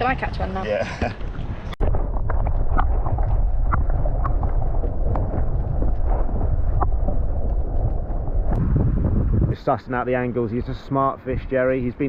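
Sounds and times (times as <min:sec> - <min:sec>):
sharp clicks and pops: 0:01.8 - 0:08.7
muffled underwater rumble: 0:01.8 - 0:09.6.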